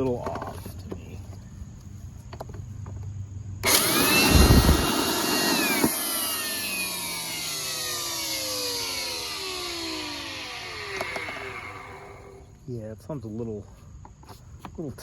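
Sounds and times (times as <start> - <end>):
shop vacuum motor whining: 3.6 - 12.6.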